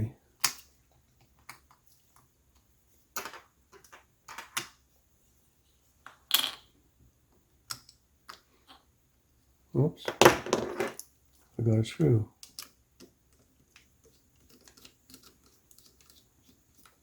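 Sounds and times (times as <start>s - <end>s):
screwdriver and small parts clicking: 12.4s - 17.0s.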